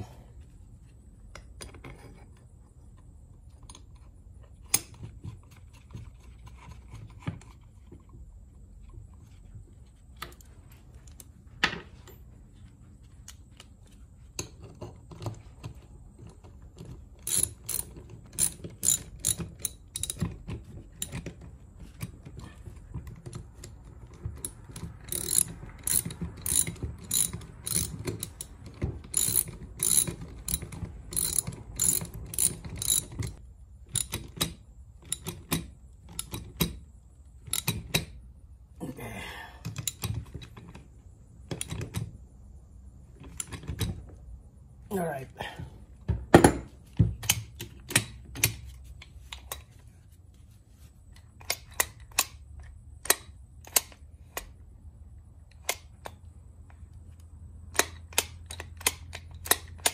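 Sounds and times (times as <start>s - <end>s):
ratchet wrench clicking: 17.2s - 20.2s, 24.4s - 33.4s, 34.0s - 35.2s, 37.5s - 38.0s.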